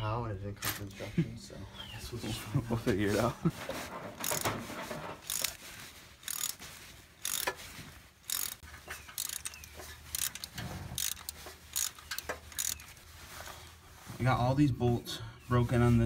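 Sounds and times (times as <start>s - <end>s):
ratchet wrench clicking: 4.2s - 4.5s, 5.2s - 5.6s, 6.2s - 6.6s, 7.2s - 7.6s, 8.3s - 12.9s.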